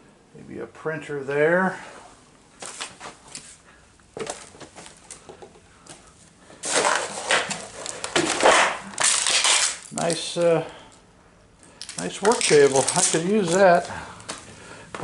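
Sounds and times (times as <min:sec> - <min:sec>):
footsteps crunching on broken glass: 0:06.6 - 0:10.4, 0:11.8 - 0:15.0.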